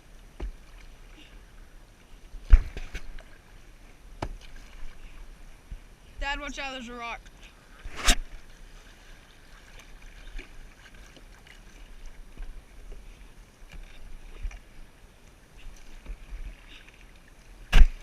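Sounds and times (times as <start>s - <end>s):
paddle strokes in water: 0.0s - 6.2s, 7.2s - 18.0s
water splashing against hull: 0.0s - 6.4s, 7.1s - 18.0s.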